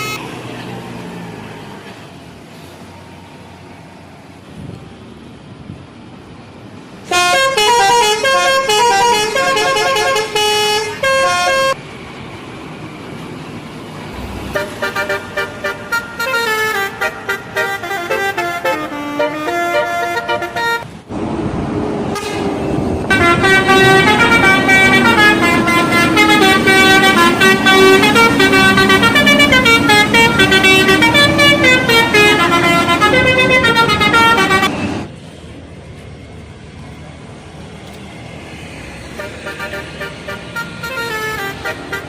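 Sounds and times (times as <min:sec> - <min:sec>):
multi-tone bus air horns melody: 0:00.0 - 0:00.2, 0:07.1 - 0:11.8, 0:14.5 - 0:20.9, 0:22.1 - 0:35.0, 0:39.2 - 0:42.0
road and engine noise: 0:00.0 - 0:42.0.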